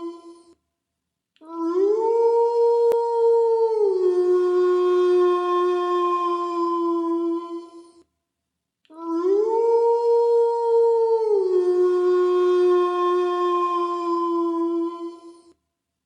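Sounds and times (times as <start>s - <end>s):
wolf howling: 1.6s - 7.8s, 9.1s - 15.3s.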